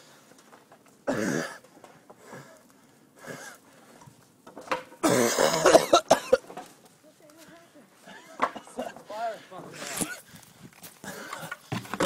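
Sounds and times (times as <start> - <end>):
person coughing: 1.1 - 1.6, 5.0 - 6.4.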